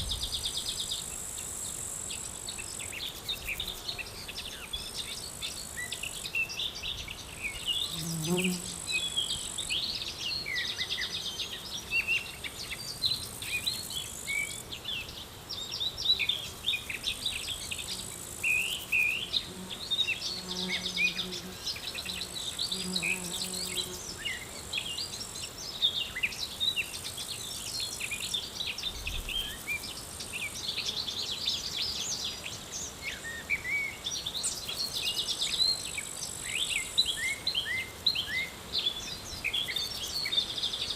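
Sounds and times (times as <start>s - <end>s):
buzzing insect passing: 0.0s - 11.8s, 16.1s - 32.2s
high insect trill: 0.0s - 40.9s
songbirds chirping: 0.0s - 40.9s.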